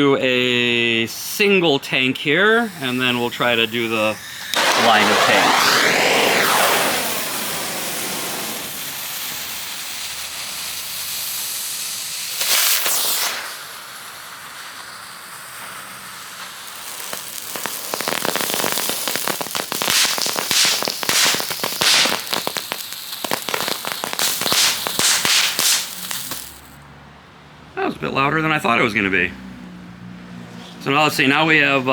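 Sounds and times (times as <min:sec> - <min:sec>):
firework hissing spray: 0:01.9 - 0:26.8
firework crackles and bangs: 0:02.6 - 0:26.8.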